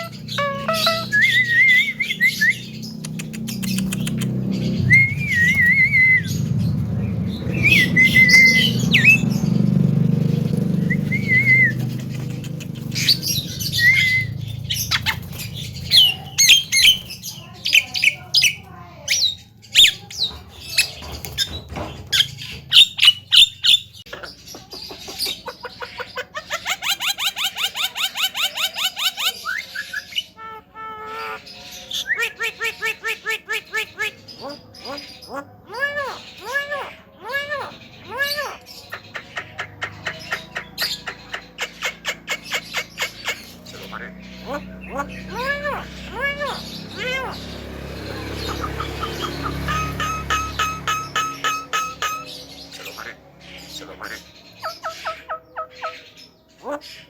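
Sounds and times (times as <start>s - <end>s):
bird ringing notes: 0.0s - 2.6s, 49.3s - 53.1s
bird harsh squawks: 0.0s - 6.4s, 12.8s - 20.1s, 25.0s - 57.0s
bird whistling phrases: 0.0s - 6.6s, 7.5s - 9.3s, 10.8s - 11.9s, 12.9s - 15.2s, 48.4s - 56.1s
sharp clicks: 2.9s - 4.5s.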